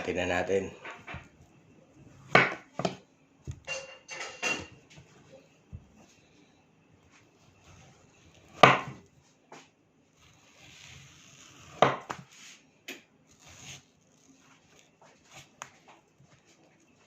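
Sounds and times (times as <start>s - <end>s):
knife scraping: 7.1s - 9.1s, 10.2s - 12.6s, 13.3s - 17.0s.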